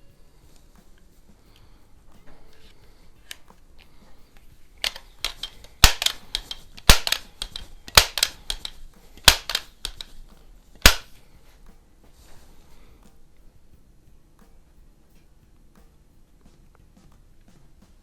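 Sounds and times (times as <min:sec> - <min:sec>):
air rifle pump clacking: 0:00.5 - 0:13.4.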